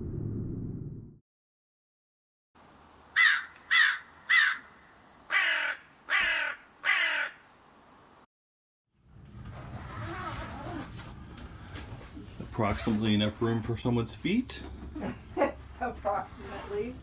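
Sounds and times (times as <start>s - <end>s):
crow cawing: 3.2s - 7.4s.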